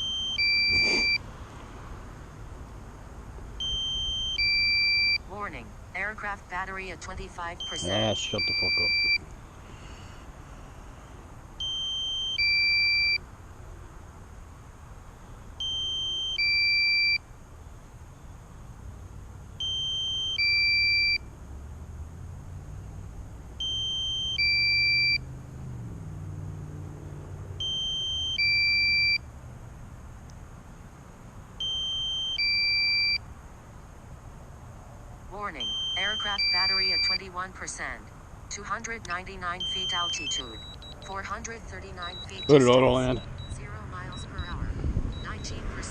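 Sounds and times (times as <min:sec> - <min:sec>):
two-tone electronic beep: 0:00.0 - 0:01.2, 0:03.6 - 0:05.2, 0:07.6 - 0:09.2, 0:11.6 - 0:13.2, 0:15.6 - 0:17.2, 0:23.6 - 0:25.2, 0:27.6 - 0:29.2, 0:31.6 - 0:33.2, 0:35.6 - 0:37.2, 0:39.6 - 0:45.9
faint low rumble: 0:35.3 - 0:45.9.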